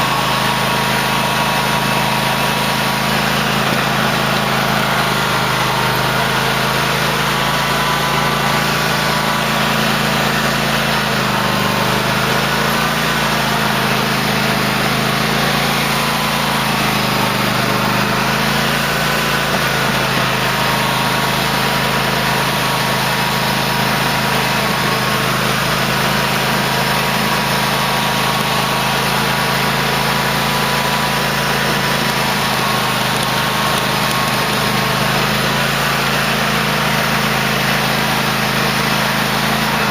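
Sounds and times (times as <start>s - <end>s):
lawn tractor engine running: 0.0s - 39.9s.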